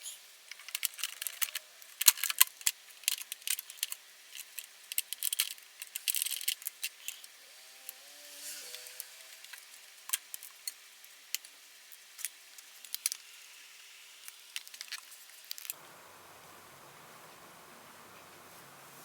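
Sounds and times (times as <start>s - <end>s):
small metal tools clicking and scraping: 0.0s - 13.4s, 14.2s - 15.8s.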